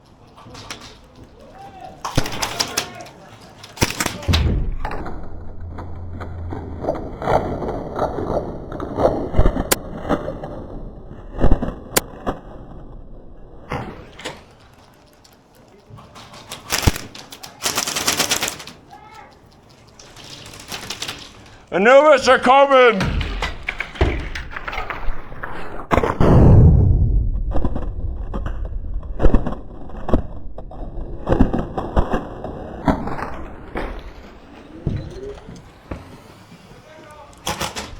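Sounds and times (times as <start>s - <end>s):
sharp clicks and knocks: 0.0s - 9.9s, 13.5s - 26.2s
airsoft gun cracks: 2.0s - 6.1s, 13.7s - 21.3s
low rumble: 4.3s - 14.2s, 23.0s - 34.5s.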